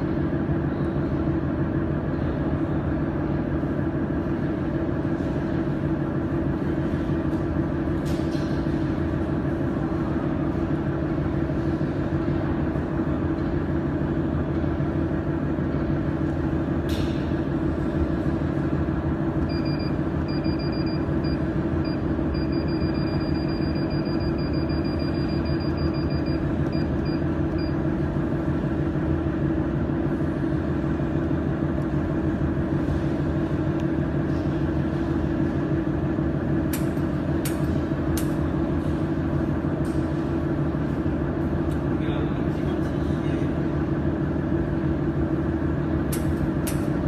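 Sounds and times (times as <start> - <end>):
machine humming: 9.0 - 42.2.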